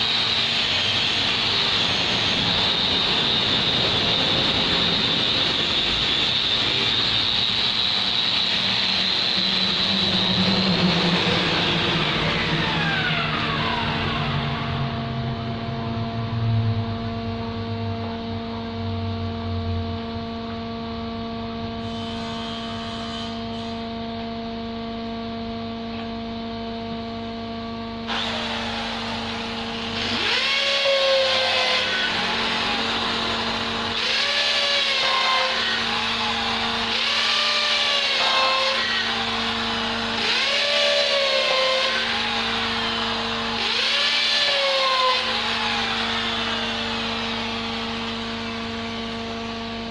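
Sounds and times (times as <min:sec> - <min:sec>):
electric drill motor humming: 0:00.0 - 0:14.9, 0:28.1 - 0:49.9
loud rushing whir: 0:00.0 - 0:21.8, 0:22.7 - 0:49.9.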